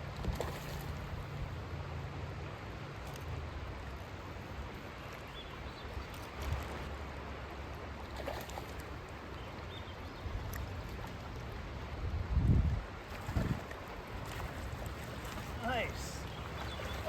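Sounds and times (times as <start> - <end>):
wind buffeting microphone: 10.0 - 15.6
river water rushing: 12.9 - 17.0.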